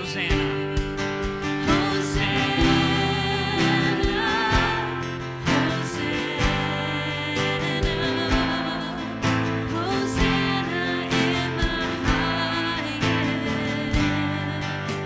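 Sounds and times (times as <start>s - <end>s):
drum hits: 0.0s - 10.6s
person singing: 0.0s - 15.0s
worship band music: 0.0s - 15.0s.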